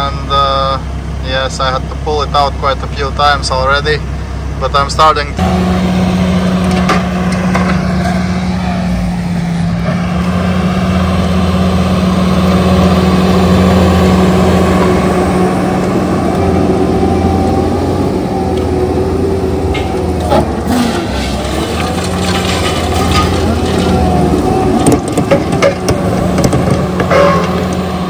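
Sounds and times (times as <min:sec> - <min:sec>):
diesel engine running at high revs: 0:00.0 - 0:28.0
hydraulic grinder milling stumps: 0:05.4 - 0:17.8, 0:18.4 - 0:28.0.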